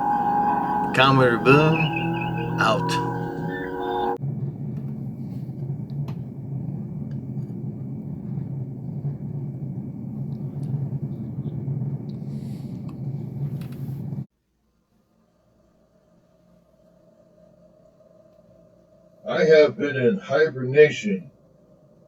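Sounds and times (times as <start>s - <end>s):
steady low rumble: 0.0s - 4.2s.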